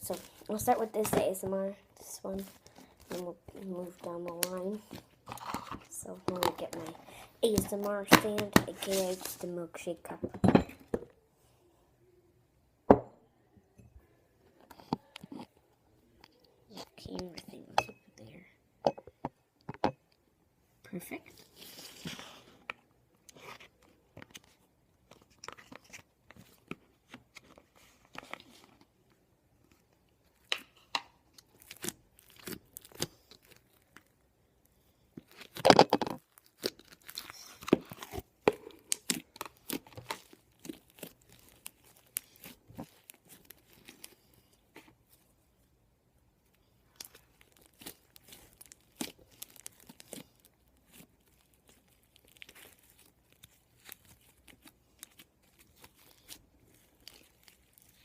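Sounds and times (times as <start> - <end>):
slime squished by hand: 35.2 - 44.9, 46.8 - 58.0.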